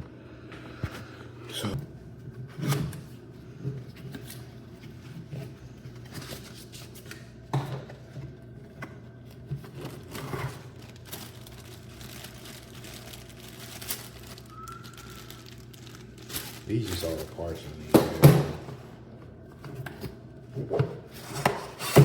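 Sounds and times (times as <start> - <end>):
low steady hum: 0.0 - 22.0
packaging rustling and crinkling: 9.1 - 18.1.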